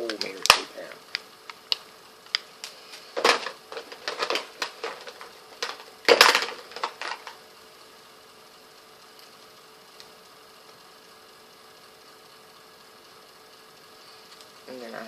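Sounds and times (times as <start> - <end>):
plastic cases clicking and clattering: 3.2 - 7.4.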